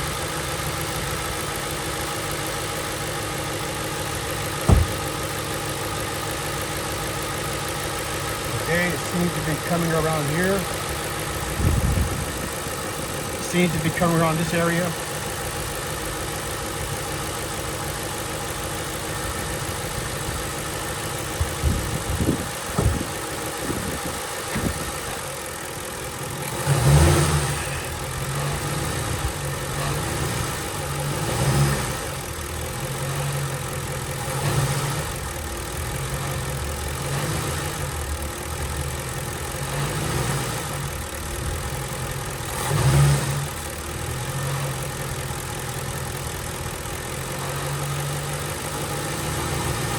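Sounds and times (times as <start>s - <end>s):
car engine revving: 3.9s - 49.9s
dull knocks: 4.6s - 5.1s.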